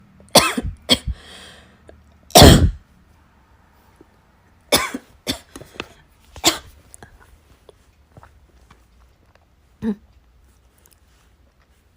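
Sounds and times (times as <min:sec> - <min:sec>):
person coughing harshly: 0:00.3 - 0:01.2, 0:02.3 - 0:02.8, 0:04.7 - 0:05.6, 0:06.4 - 0:06.7.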